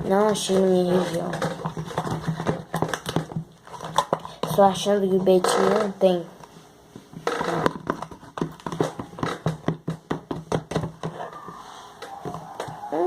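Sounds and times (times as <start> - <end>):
slime being stirred: 0.0 - 5.8.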